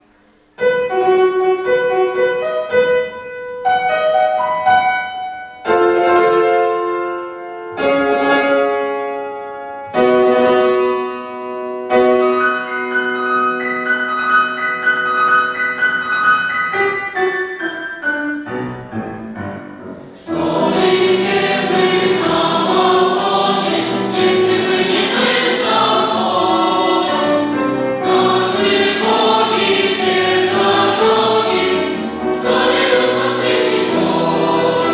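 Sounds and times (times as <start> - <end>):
piano chords and melody: 0.6 - 34.9
boys choir singing: 20.2 - 34.9.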